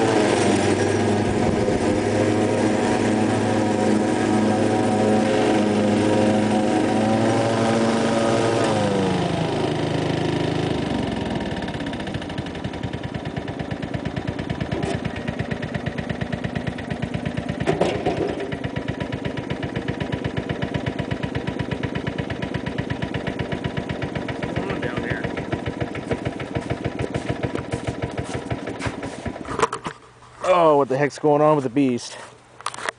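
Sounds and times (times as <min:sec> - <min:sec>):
lawn tractor engine idling: 0:00.0 - 0:31.1
engine knocking: 0:11.9 - 0:29.4.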